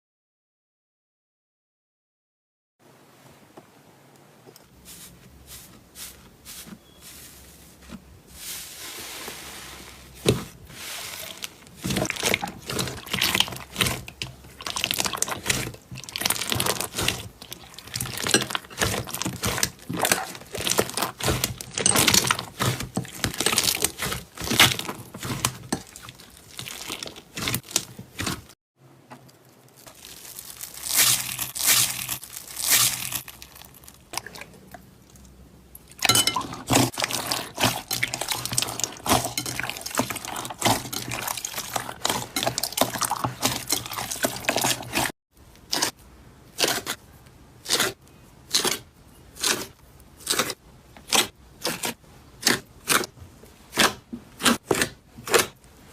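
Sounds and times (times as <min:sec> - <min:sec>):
slime crackling and popping: 0:11.8 - 0:28.4, 0:29.3 - 0:34.1.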